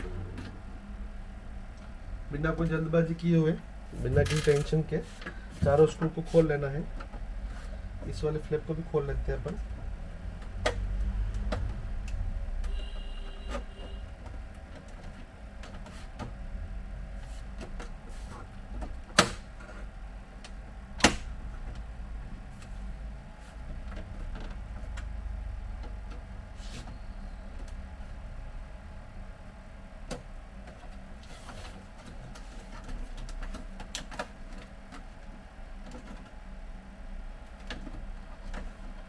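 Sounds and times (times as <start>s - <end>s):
low handling rumble: 0.0s - 4.2s.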